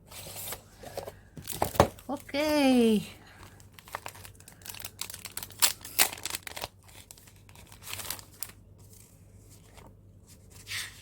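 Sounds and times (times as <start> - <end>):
plastic packaging crinkling: 3.4 - 9.0.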